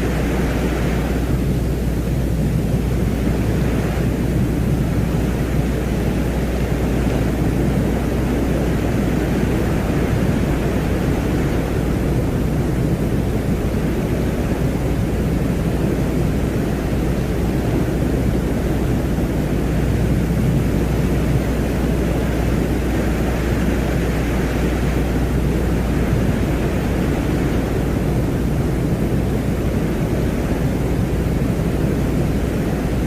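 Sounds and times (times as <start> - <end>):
dense low rumbling: 1.0 - 33.0.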